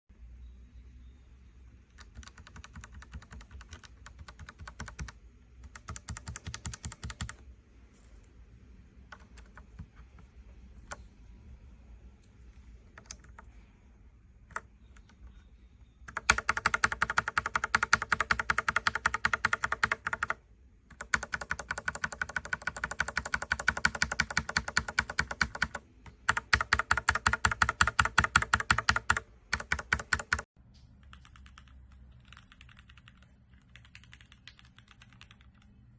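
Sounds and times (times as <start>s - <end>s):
mechanical keyboard typing: 1.9s - 7.5s, 9.0s - 11.1s, 12.6s - 13.6s, 14.4s - 15.4s, 16.0s - 35.9s.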